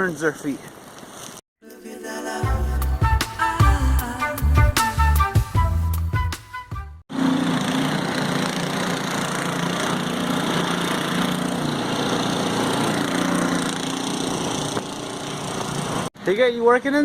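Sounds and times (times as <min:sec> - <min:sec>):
music: 0:01.6 - 0:07.0
small engine droning: 0:07.1 - 0:16.1.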